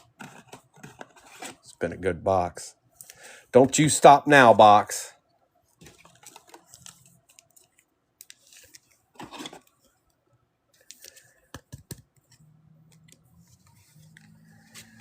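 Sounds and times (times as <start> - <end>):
cards and wrappers rustling: 0.0 - 1.7, 5.8 - 10.0, 10.8 - 12.0, 13.0 - 15.0.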